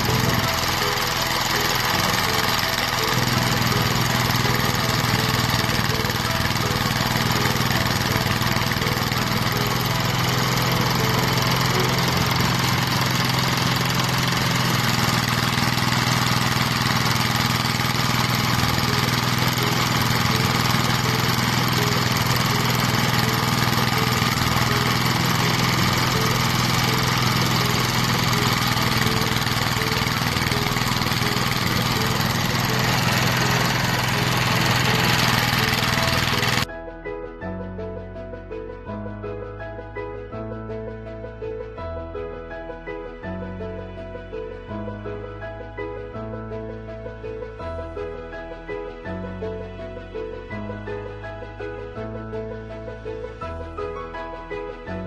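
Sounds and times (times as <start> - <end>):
thresher drum whirring: 0.0 - 36.7
thresher motor hum: 0.0 - 36.7.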